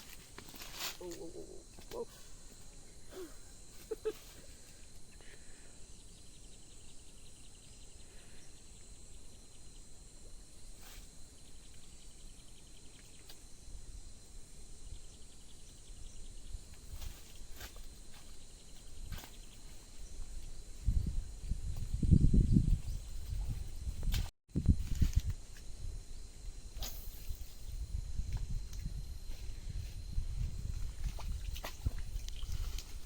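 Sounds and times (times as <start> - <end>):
insects buzzing high-pitched: 24.6 - 33.0.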